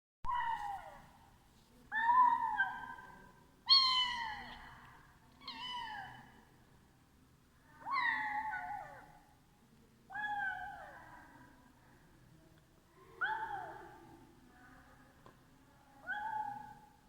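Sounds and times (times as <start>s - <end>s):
kitten meowing: 3.7s - 4.5s.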